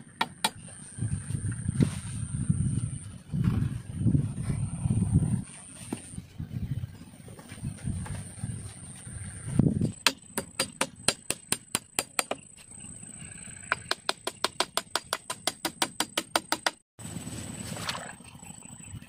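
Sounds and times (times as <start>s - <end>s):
thin high-pitched whine: 17.1s - 19.0s.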